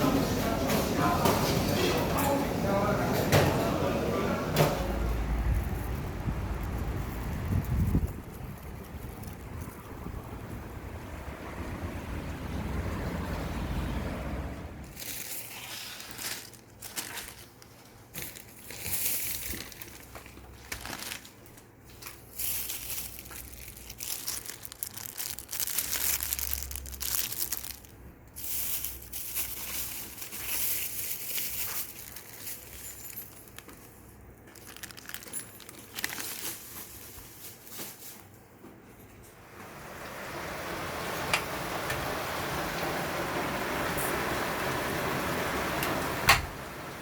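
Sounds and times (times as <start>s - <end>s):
crinkling and rustling: 4.6s - 10.6s, 14.8s - 39.3s.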